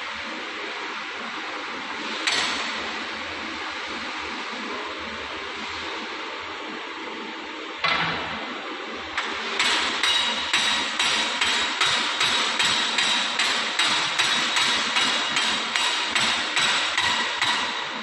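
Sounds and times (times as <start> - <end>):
hammer striking metal: 9.6 - 17.8.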